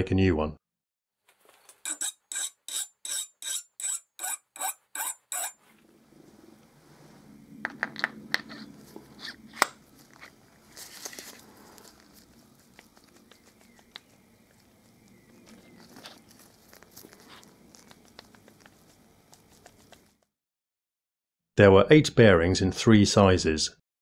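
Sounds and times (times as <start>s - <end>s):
file rasping on steel: 1.8s - 5.6s.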